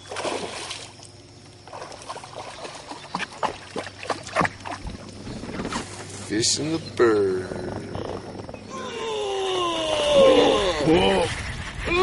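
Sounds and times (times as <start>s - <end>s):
water splashing: 0.0s - 5.2s
low hum of boat: 0.0s - 12.0s.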